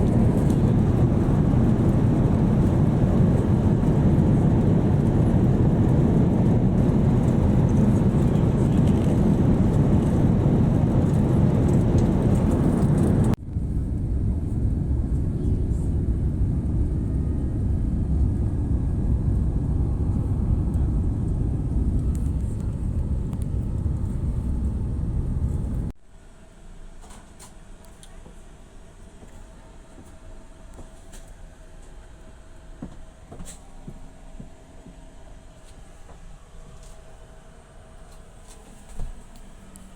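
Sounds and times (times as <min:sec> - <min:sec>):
airliner cabin engine rumble: 0:00.0 - 0:26.0.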